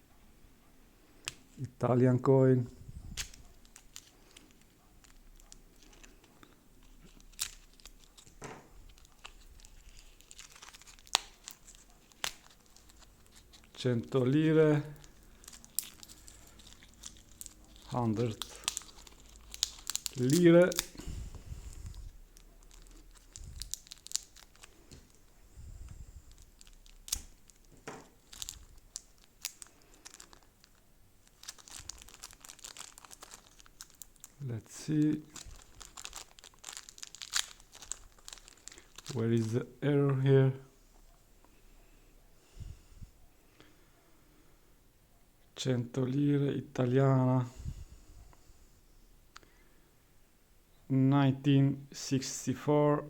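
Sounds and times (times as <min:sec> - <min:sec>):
packaging crinkling: 0:02.8 - 0:25.5, 0:26.2 - 0:39.6.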